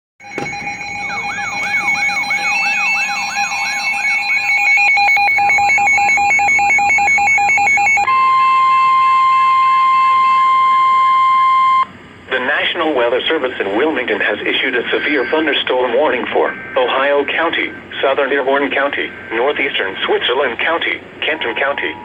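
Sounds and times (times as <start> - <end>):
fast electronic beeping: 0.2 - 8.1
steady electronic alarm tone: 0.2 - 12.0, 13.0 - 22.0
rising and falling alert whoop: 0.7 - 6.1.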